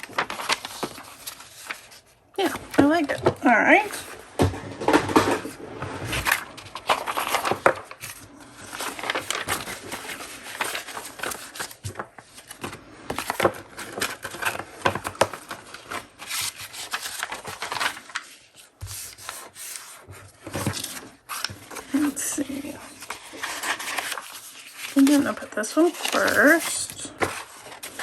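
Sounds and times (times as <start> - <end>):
paper sheets rustling: 0.0 - 28.0.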